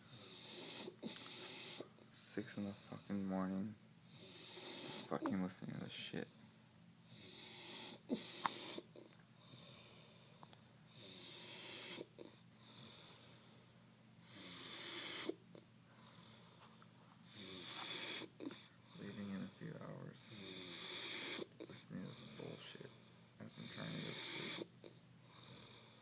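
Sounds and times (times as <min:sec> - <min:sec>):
man snoring: 0:00.1 - 0:01.8, 0:04.2 - 0:05.4, 0:14.3 - 0:15.4, 0:17.3 - 0:19.5, 0:20.3 - 0:23.0, 0:23.6 - 0:24.7.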